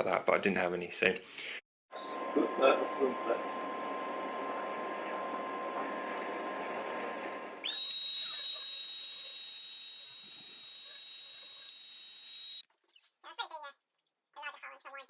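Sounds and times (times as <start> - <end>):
high-pitched motor whine: 7.6 - 12.6.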